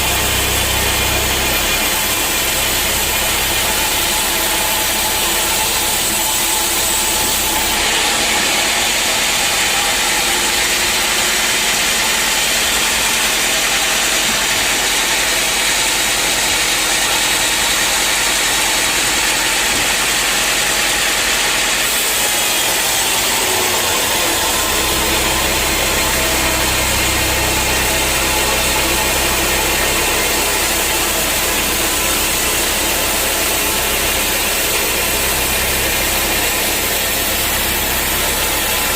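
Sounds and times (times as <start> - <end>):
sawmill machinery running: 0.0 - 38.9
deep engine hum: 22.8 - 38.9.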